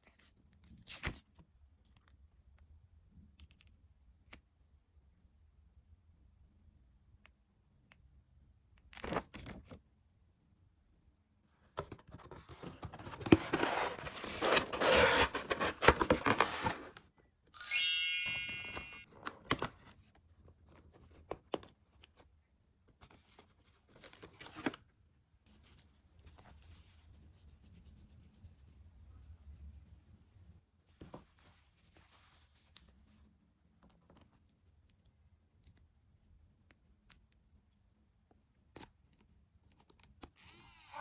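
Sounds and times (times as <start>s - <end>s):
packaging tearing and crinkling: 13.2s - 16.9s
bright ding: 17.6s - 19.0s.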